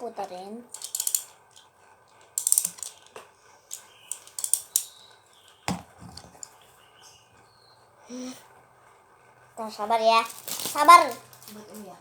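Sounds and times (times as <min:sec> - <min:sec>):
spinning top ratcheting clicks: 0:00.7 - 0:05.6.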